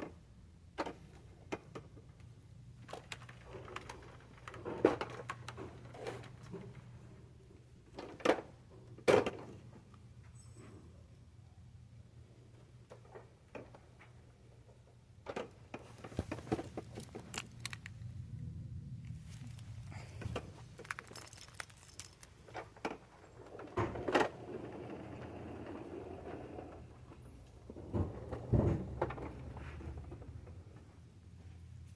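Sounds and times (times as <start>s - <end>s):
light clicks and rattles: 19.0s - 23.8s.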